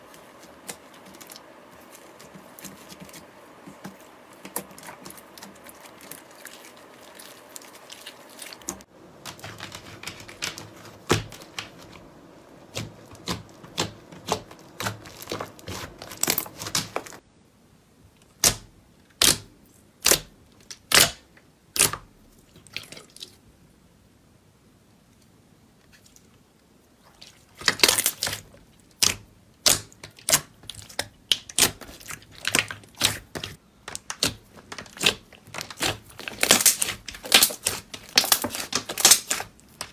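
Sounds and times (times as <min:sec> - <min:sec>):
slime and soap crackling clicks: 0:12.7 - 0:17.2, 0:29.0 - 0:39.9.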